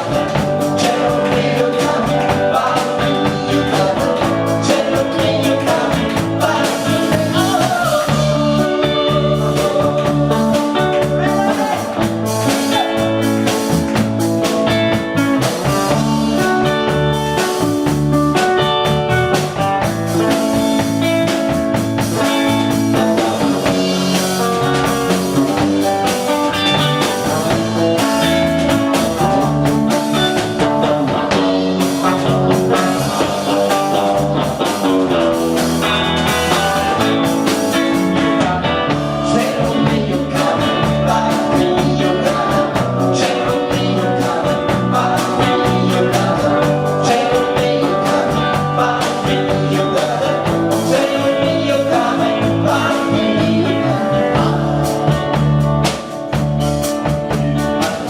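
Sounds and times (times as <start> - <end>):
bass guitar: 0.0 - 58.0
drum kit: 0.0 - 58.0
electric guitar: 0.0 - 58.0.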